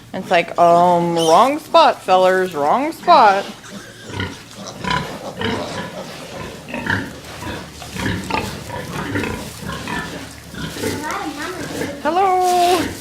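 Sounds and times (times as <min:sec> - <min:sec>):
pigs grunting: 0:02.7 - 0:13.0.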